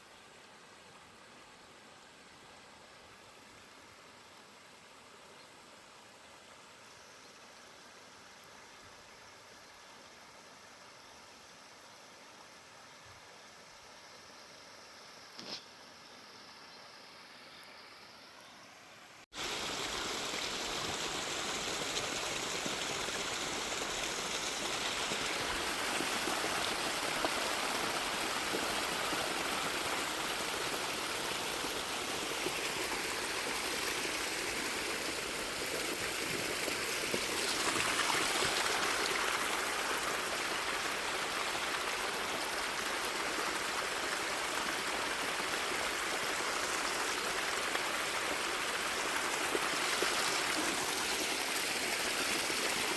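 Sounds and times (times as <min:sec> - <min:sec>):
running water rushing: 0:18.9 - 0:52.9.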